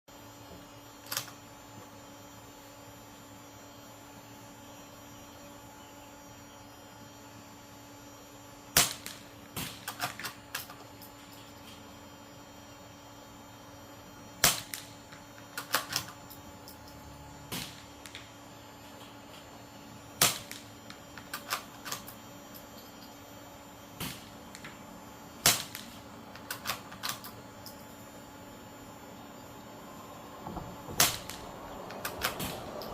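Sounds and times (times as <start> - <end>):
steady low hum: 0.1 - 32.9
suppressed rifle shots: 31.0 - 32.6.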